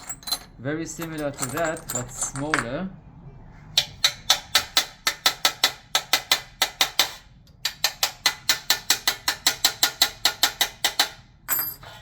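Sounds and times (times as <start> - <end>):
hammer tapping metal punch: 3.8 - 11.8.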